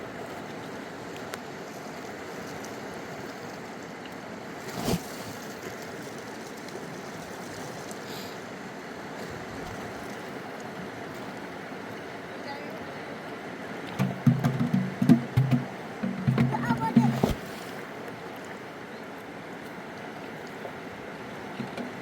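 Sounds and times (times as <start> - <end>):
river water rushing: 6.7 - 22.0.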